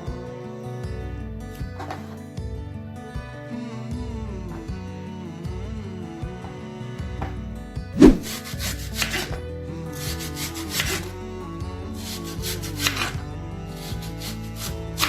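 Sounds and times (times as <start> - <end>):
loud thump: 8.0 - 8.3
rasping scraping strokes: 8.0 - 9.3.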